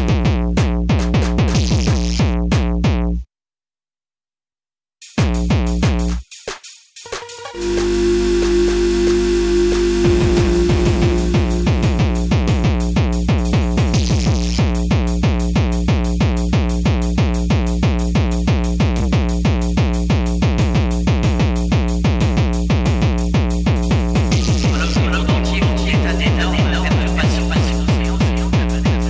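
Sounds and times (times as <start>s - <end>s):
fast kick drum: 0.0s - 3.0s, 5.0s - 7.8s, 10.0s - 29.0s
bright noise sweep: 7.1s - 13.2s
synth bass line: 7.2s - 14.6s, 24.3s - 29.0s.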